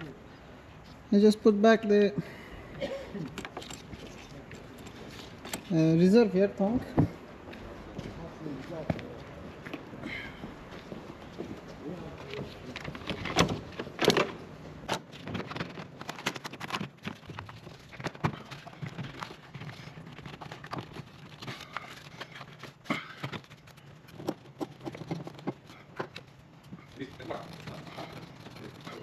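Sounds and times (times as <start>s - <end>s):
tools clicking and knocking: 3.2s - 5.8s.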